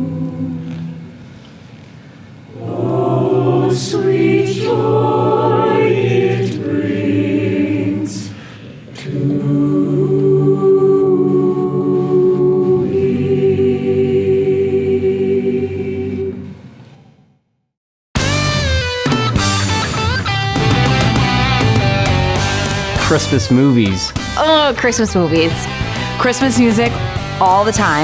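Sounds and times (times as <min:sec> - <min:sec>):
choir singing: 0:00.0 - 0:01.3, 0:02.5 - 0:16.7.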